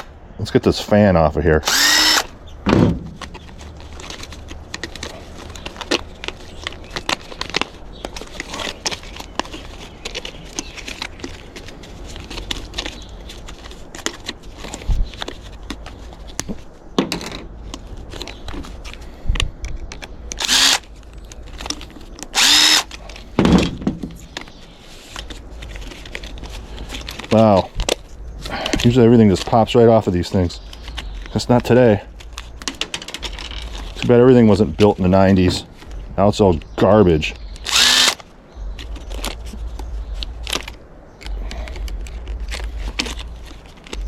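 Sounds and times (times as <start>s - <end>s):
power drill bursts: 1.6s - 2.3s, 20.4s - 20.8s, 22.4s - 22.9s, 37.6s - 38.2s.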